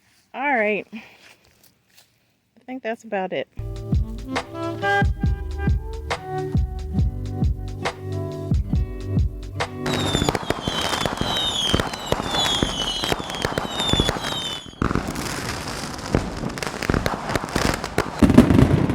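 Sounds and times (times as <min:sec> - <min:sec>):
music: 0:03.6 - 0:10.3
fireworks crackling pops: 0:09.6 - 0:18.9
falling firework whistles: 0:09.9 - 0:18.9.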